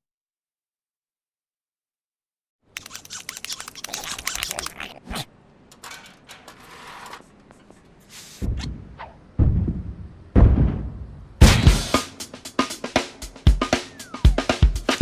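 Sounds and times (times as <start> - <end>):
cartoon clicks and clattering: 2.7 - 5.0.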